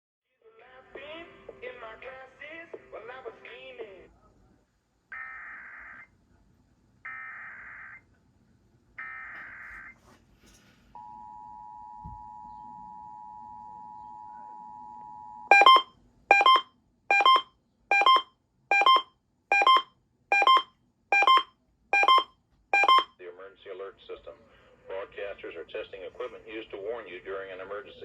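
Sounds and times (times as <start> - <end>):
two-tone attention signal: 11.0 - 23.1
repeated loud beep: 15.5 - 23.1.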